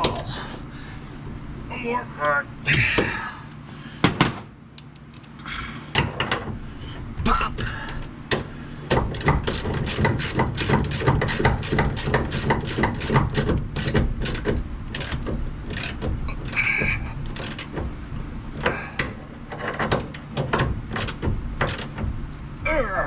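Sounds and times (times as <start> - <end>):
steady low hum: 0.0 - 23.0
hand ratchet clicking: 9.0 - 17.9, 20.9 - 22.0.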